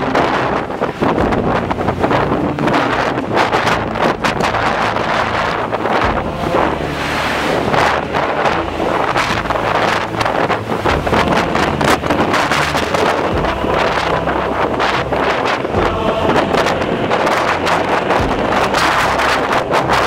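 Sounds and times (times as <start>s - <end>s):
strong wind gusting on microphone: 0.0s - 20.0s.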